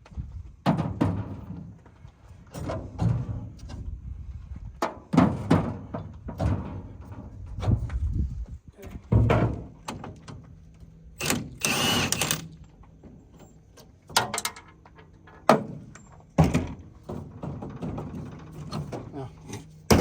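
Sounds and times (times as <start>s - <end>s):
knocks and clunks: 4.8s - 8.0s, 8.9s - 10.4s, 15.3s - 19.2s.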